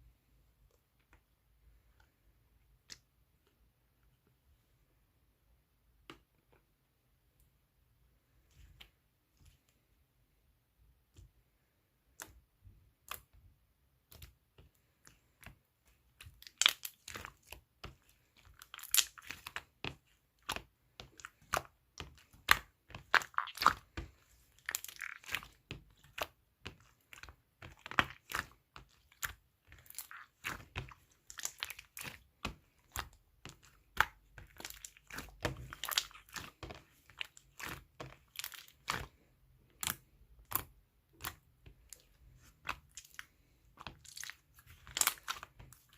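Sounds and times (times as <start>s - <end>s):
slime squishing and popping: 15.4s - 45.9s.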